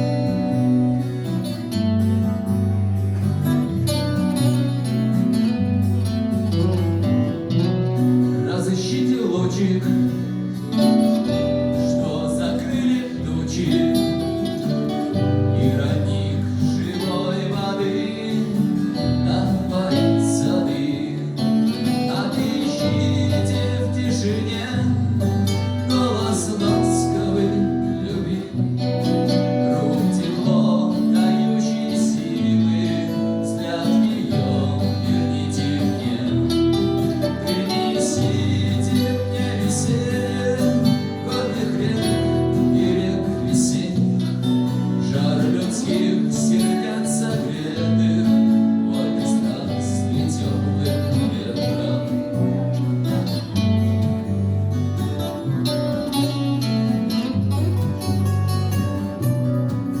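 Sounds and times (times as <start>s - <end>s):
acoustic guitar playing: 0.0s - 60.0s
person singing: 8.2s - 53.6s.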